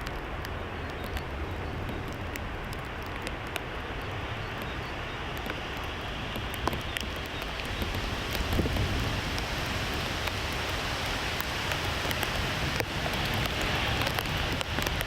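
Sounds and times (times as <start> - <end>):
faint clicks: 0.0 - 8.5
jet airliner in flight: 0.0 - 15.0.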